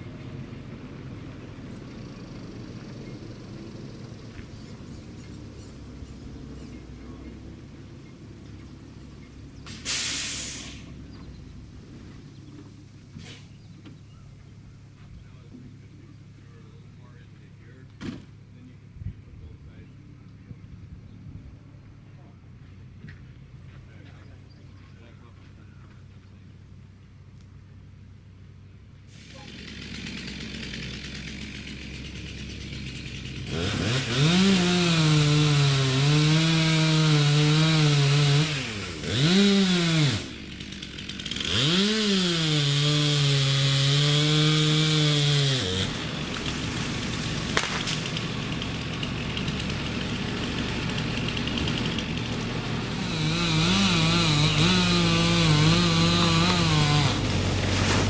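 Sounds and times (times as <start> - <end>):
chainsaw cutting wood: 29.1 - 58.0.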